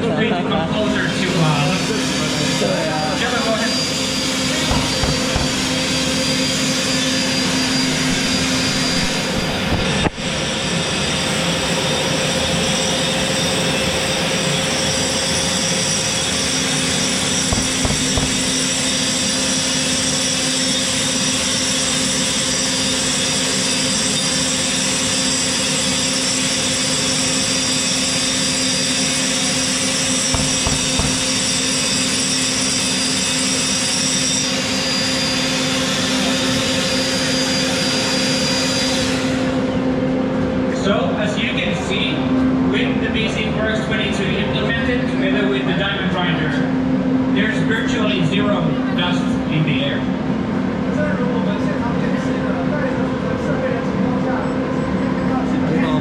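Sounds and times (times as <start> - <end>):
dust extractor whine: 0.8 - 41.0
angle grinder grinding: 4.0 - 10.4.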